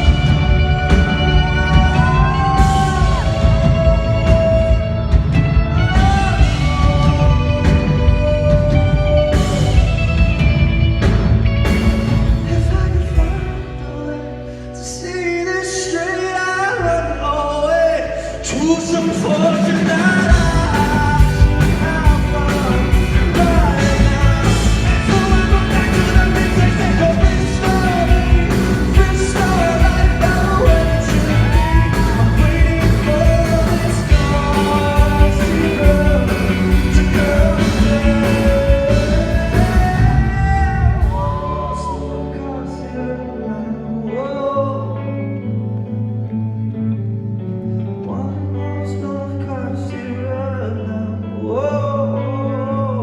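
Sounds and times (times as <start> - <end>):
man singing: 0.0 - 10.6, 11.6 - 45.7, 47.8 - 53.0
drums steady beat: 0.0 - 13.6, 19.0 - 41.8
live rock band playing: 0.0 - 53.0.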